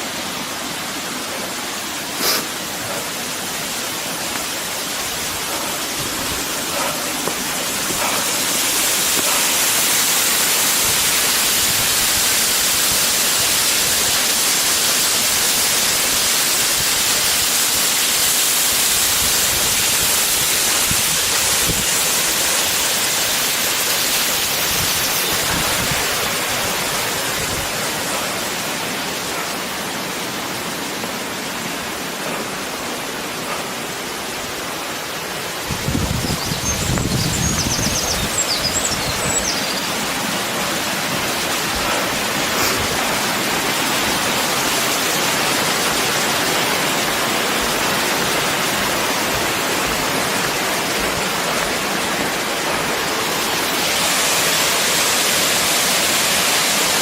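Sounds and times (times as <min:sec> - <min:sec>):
waterfall roar: 0:00.0 - 0:57.0
faint high chirps: 0:36.2 - 0:40.0.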